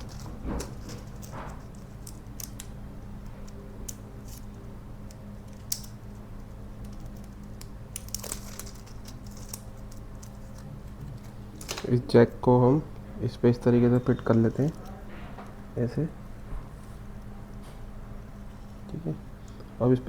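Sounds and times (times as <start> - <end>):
steady low hum: 0.0 - 20.0
small tools clicking: 5.1 - 6.0.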